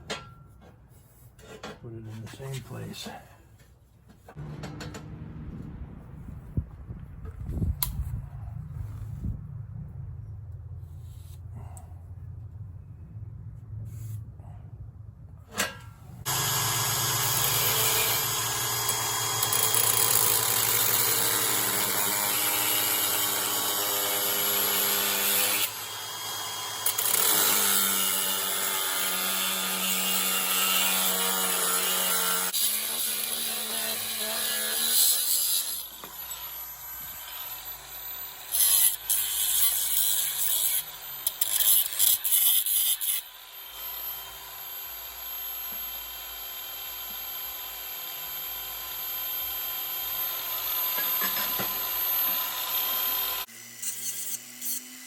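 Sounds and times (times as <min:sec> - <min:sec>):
electric grinder grinding steel: 0:16.3 - 0:55.0.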